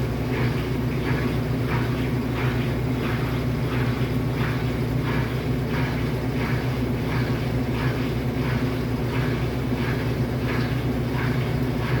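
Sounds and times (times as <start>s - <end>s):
washing machine spin cycle: 0.0s - 12.0s.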